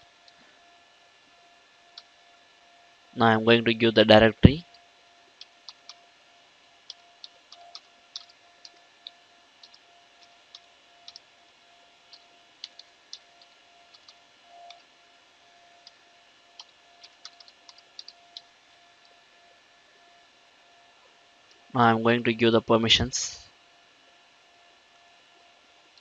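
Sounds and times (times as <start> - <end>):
faint steady hum: 0.0 - 26.0
keyboard typing: 6.9 - 11.3, 12.1 - 14.8, 16.6 - 18.5.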